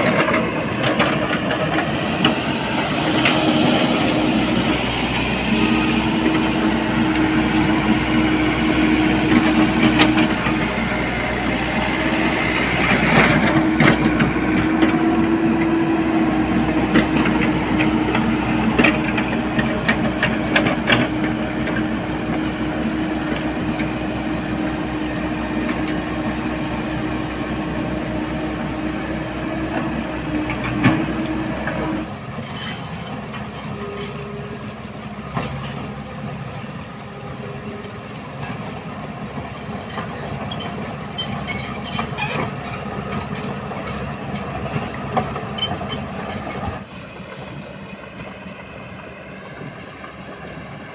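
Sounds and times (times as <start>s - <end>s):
diesel engine of heavy machinery: 0.0s - 50.9s
high metal squeaks: 40.1s - 50.9s.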